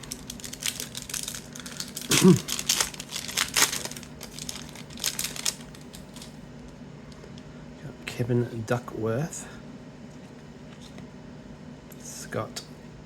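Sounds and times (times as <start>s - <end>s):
wrapper crinkling and tearing: 0.0s - 6.4s.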